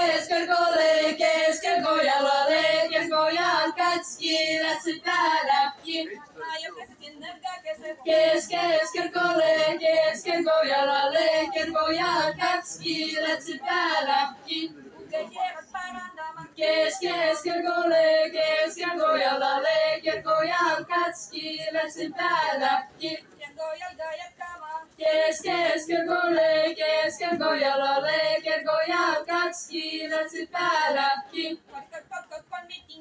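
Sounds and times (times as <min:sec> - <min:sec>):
women singing folk song together: 0:00.0 - 0:33.0.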